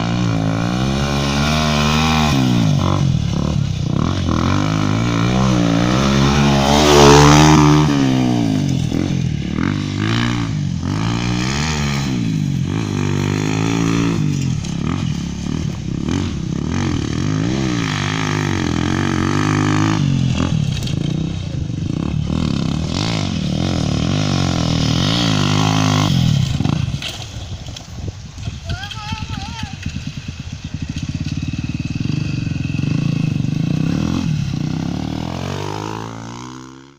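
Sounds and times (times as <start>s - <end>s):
motocross bike engine revving: 0.0s - 27.9s, 28.9s - 36.9s.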